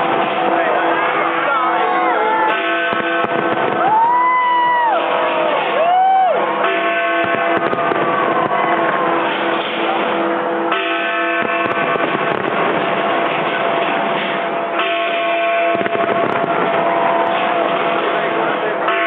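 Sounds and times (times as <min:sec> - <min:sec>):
fireworks bangs: 0:00.0 - 0:19.0
fireworks crackling: 0:00.0 - 0:19.0
sustained ringing tones: 0:06.4 - 0:19.0.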